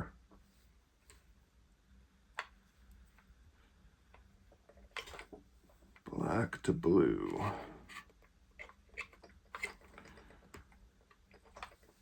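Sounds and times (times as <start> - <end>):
small parts clicking and tapping: 7.9 - 12.0.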